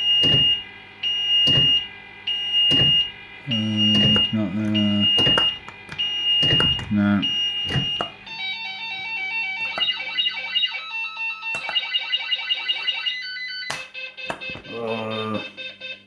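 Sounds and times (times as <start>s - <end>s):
high electronic beeps: 2.5s - 8.2s.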